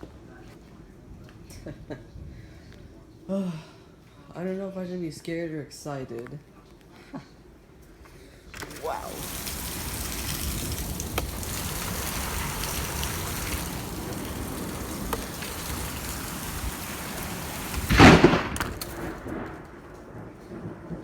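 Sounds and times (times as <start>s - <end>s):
heavy rain falling: 8.6s - 21.0s
loud crack of thunder: 8.6s - 21.0s.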